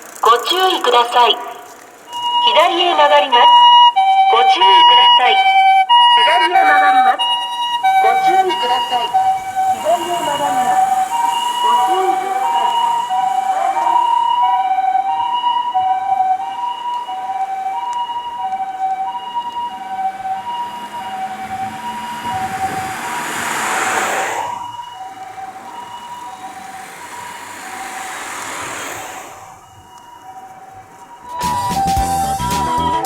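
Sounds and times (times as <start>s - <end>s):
two-note ambulance siren: 0.2s - 33.0s
broad rushing noise: 8.0s - 14.3s, 20.3s - 30.3s.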